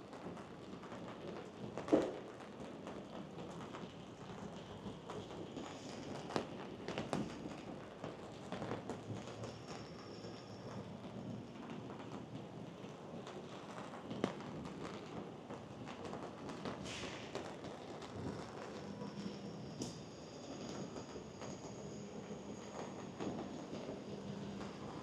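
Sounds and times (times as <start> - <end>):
raindrops tapping a surface: 0.0 - 20.4
heavy rain falling: 10.5 - 25.0.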